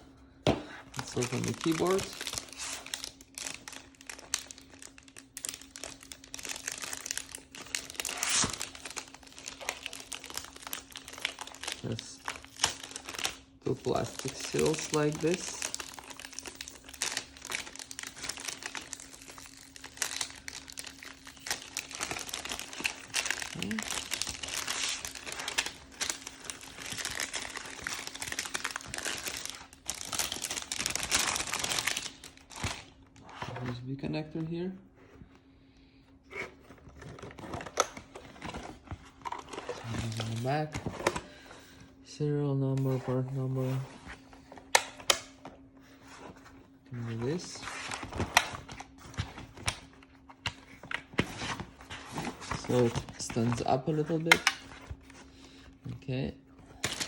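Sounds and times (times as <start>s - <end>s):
plastic packaging crinkling: 0.8s - 33.7s, 56.8s - 57.0s.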